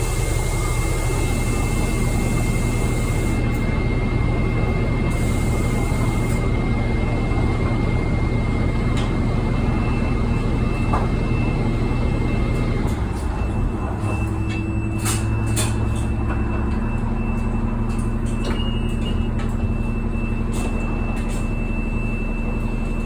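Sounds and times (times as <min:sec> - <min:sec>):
diesel bus engine idling: 0:00.0 - 0:15.0.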